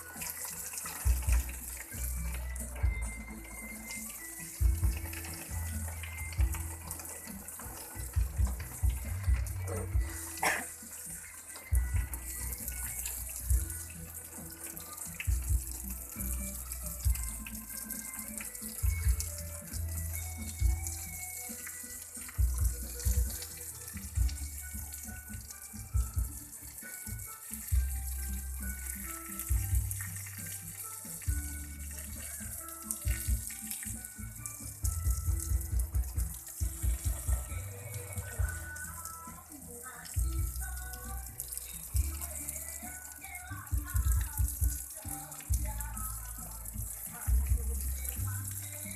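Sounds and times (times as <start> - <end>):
music with deep beat: 0.0 - 48.9
tap water running: 0.0 - 48.9.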